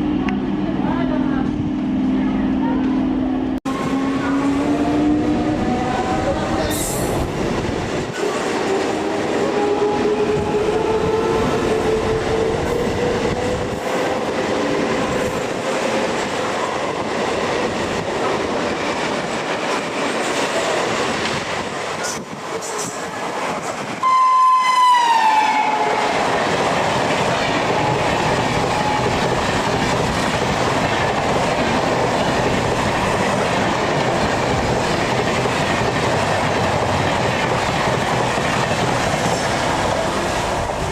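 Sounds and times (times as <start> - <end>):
train coaches rumbling past: 0.0 - 40.9
train horn: 3.7 - 7.0, 8.6 - 12.9, 24.0 - 26.3.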